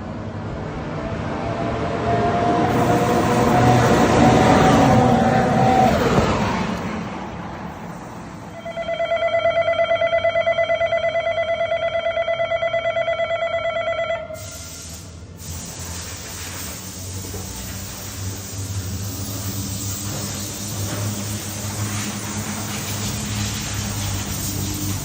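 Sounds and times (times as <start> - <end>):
car engine and road noise: 0.0 - 9.1, 14.4 - 25.0
pulsing electronic ringing tone: 8.5 - 14.4.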